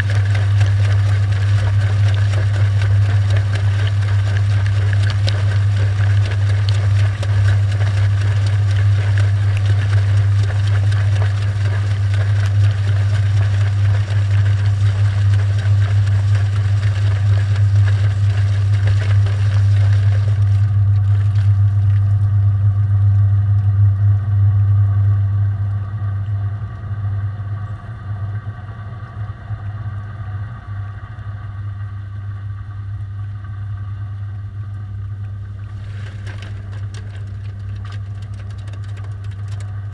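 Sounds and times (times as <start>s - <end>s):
washing machine drum spinning: 0.0s - 22.4s, 35.2s - 39.9s.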